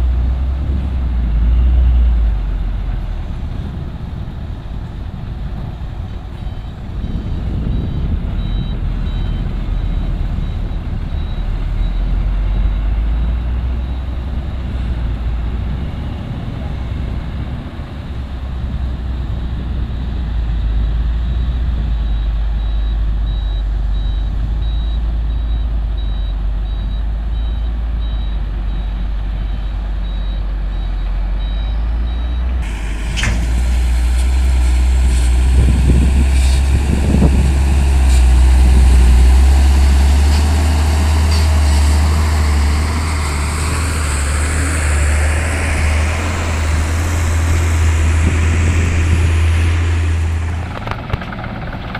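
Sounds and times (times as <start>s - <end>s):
heavy diesel machinery rumbling: 0.0s - 51.9s
rising pitch sweeps: 43.1s - 50.9s.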